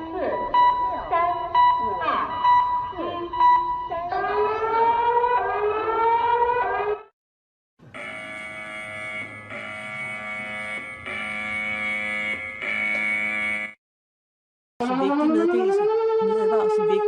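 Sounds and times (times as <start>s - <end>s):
steady multi-pitch alarm tone: 0.0s - 6.0s, 7.9s - 13.8s, 14.8s - 17.0s
rising siren tone: 8.0s - 13.8s, 14.8s - 17.0s.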